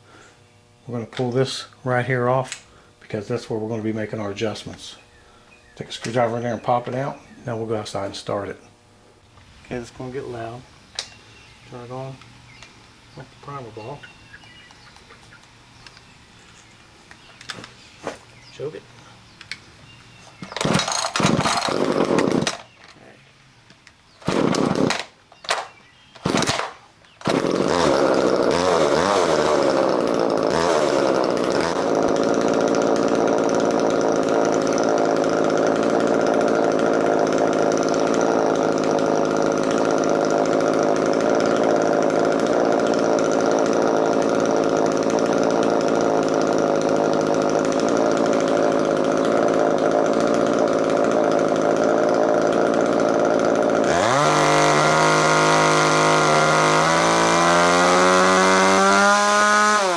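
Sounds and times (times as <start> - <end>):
chainsaw engine running: 0.0 - 8.6, 9.4 - 22.8, 24.2 - 25.2, 26.2 - 59.9
chainsaw starter pulls: 20.2 - 23.0, 24.2 - 59.9.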